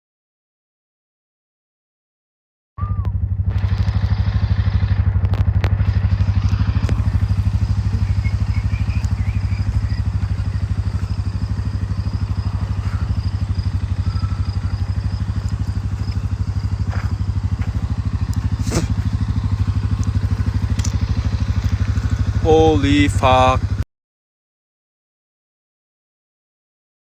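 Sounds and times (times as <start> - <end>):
motor pulsing low hum: 2.8 - 23.8
faint clicks: 15.3 - 18.6, 19.6 - 22.1.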